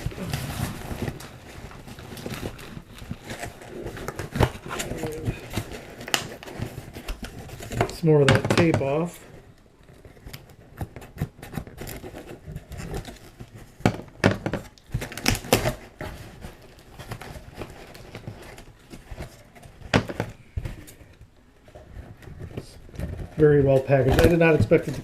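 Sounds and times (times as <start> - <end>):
box rustling and scraping: 0.0 - 25.0
packing tape peeled off cardboard: 9.8 - 13.8, 14.7 - 21.0.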